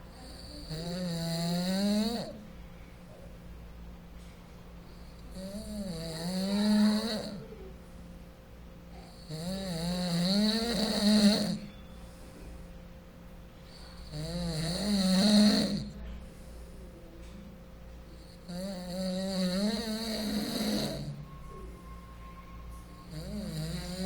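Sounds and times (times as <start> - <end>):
rattling snores: 0.1 - 2.4, 4.9 - 7.6, 8.9 - 11.8, 13.6 - 16.3, 18.2 - 21.7, 23.0 - 24.0
quiet breathing: 2.2 - 10.0, 11.3 - 24.0.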